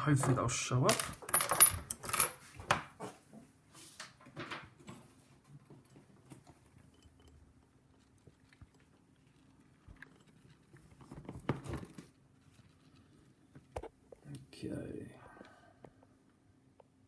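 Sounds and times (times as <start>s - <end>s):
padlock pins clicking and scratching: 1.0s - 2.4s.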